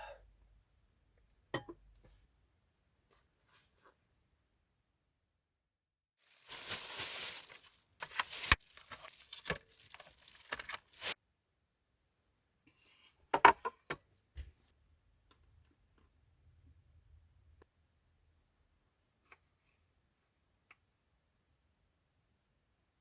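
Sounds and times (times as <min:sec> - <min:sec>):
packaging tearing and crinkling: 0:06.2 - 0:11.2.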